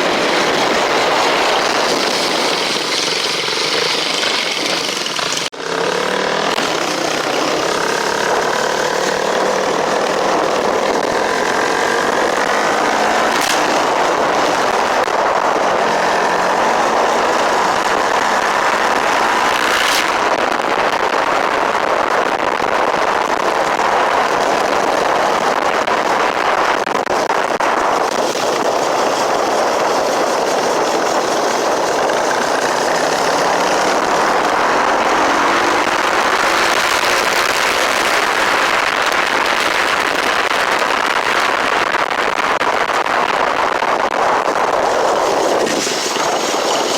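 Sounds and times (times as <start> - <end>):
motorcycle engine accelerating: 0.0 - 46.9.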